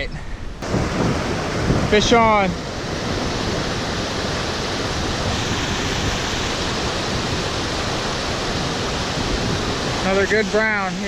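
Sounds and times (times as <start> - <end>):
stream water rushing: 0.6 - 11.0.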